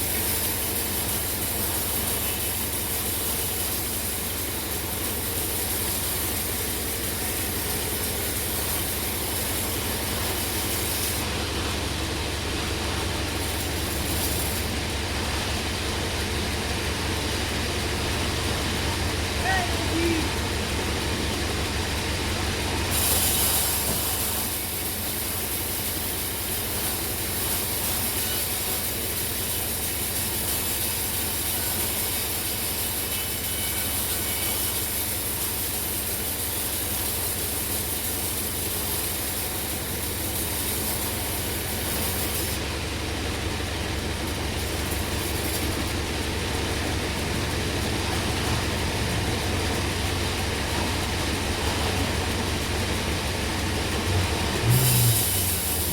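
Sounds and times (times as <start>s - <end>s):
saw blade cutting log: 0.0s - 11.3s, 13.0s - 15.0s, 22.9s - 42.8s, 44.1s - 46.1s, 54.0s - 55.9s
mill motor droning: 0.0s - 55.9s.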